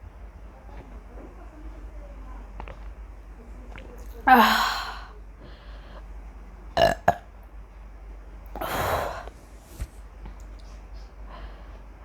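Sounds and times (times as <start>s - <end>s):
woman burping: 4.2s - 5.1s, 6.8s - 7.2s
breathy exhale: 8.6s - 9.9s.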